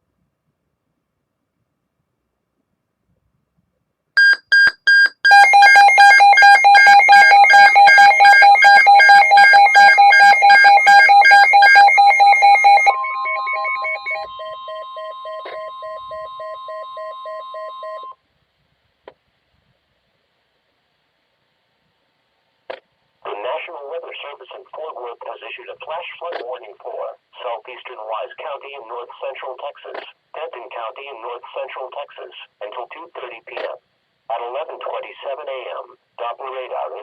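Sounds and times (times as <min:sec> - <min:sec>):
pulsing low beep: 0:04.2 - 0:18.1
pulsing electronic alarm: 0:04.2 - 0:18.2
short beeps: 0:04.2 - 0:18.2
steady single-pitch tone: 0:05.2 - 0:18.1.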